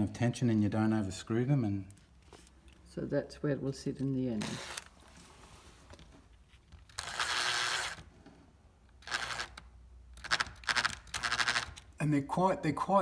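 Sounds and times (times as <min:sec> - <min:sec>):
electric drill driving screws: 0:04.4 - 0:04.9, 0:06.9 - 0:08.1, 0:09.0 - 0:09.6, 0:10.2 - 0:11.8.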